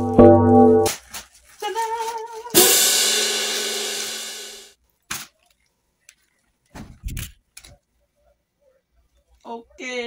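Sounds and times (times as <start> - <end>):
cymbal crash sound effect: 2.6 - 4.7.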